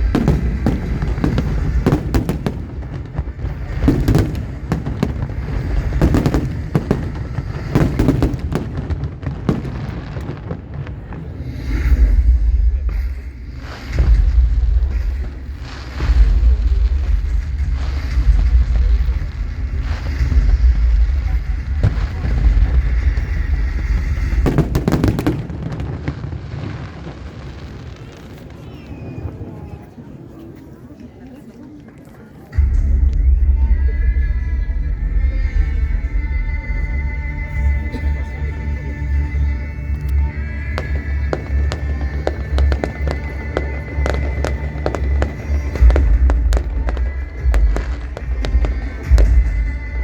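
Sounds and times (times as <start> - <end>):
firework shells booming: 0.0 - 13.0, 13.6 - 28.3, 40.5 - 50.0
firework cracks and crackles: 0.0 - 29.9, 39.0 - 50.0.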